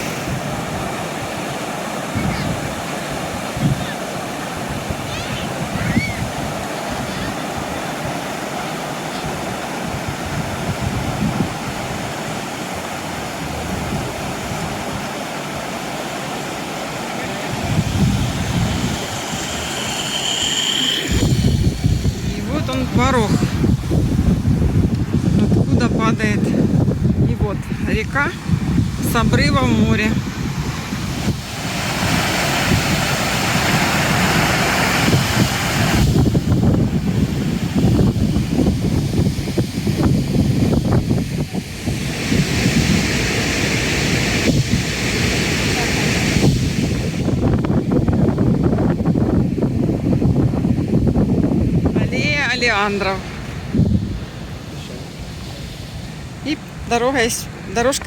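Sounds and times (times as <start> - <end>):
wind buffeting microphone: 0.0 - 16.0, 16.9 - 58.0
waterfall rushing: 0.0 - 48.1
low rumble: 17.8 - 25.9
thin high tone: 18.1 - 23.4.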